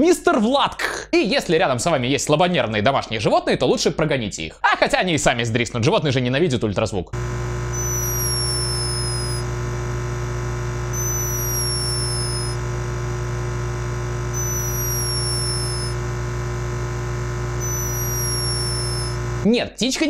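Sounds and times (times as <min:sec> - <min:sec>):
steady loud hum: 0:07.2 - 0:19.4
hummingbird snoring whistle: 0:07.7 - 0:09.4, 0:10.9 - 0:12.6, 0:14.3 - 0:16.0, 0:17.6 - 0:19.2.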